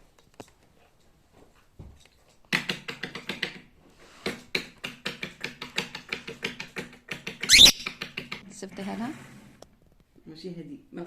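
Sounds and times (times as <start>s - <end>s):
bird beak pecking and tapping: 2.5s - 8.4s.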